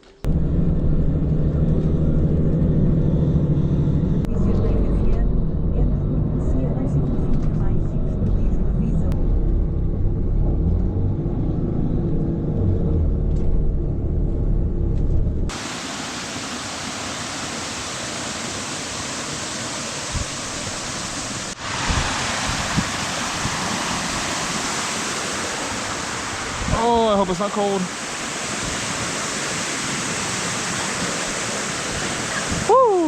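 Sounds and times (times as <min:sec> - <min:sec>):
road noise: 0:00.0 - 0:33.0
vehicle engine rumble: 0:00.0 - 0:33.0
water rushing: 0:15.5 - 0:33.0.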